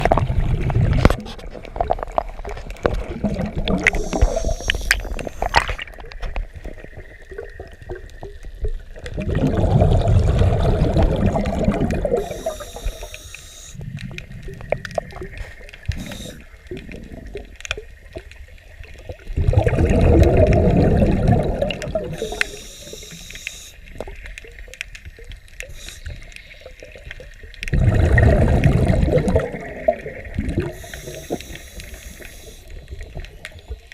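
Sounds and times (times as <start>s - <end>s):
faint clicks and scraping: 0.0s - 9.2s, 11.7s - 19.4s, 21.6s - 27.9s, 29.3s - 33.9s
exhaled bubbles rumbling: 0.0s - 13.1s, 13.8s - 23.2s, 23.8s - 33.9s
regulator hiss on inhalation: 3.8s - 5.8s, 12.1s - 13.8s, 15.9s - 16.6s, 22.1s - 23.9s, 25.6s - 26.7s, 30.6s - 33.9s.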